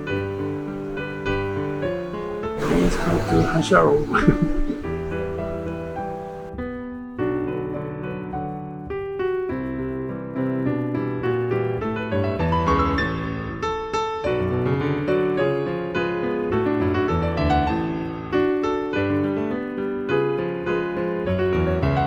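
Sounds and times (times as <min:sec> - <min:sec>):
piano music: 0:00.0 - 0:06.5.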